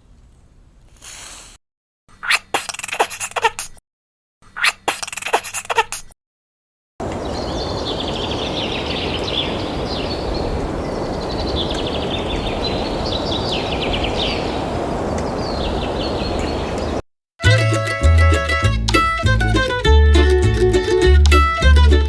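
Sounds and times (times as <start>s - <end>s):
small birds chirping: 7.0s - 17.0s.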